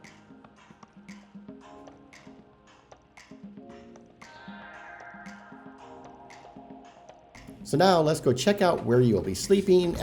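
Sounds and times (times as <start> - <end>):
light percussive beat: 5.3 - 10.0.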